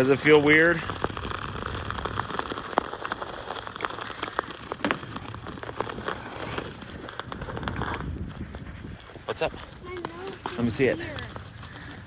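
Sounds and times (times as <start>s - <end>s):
ice skate blades scraping ice: 0.0s - 12.0s.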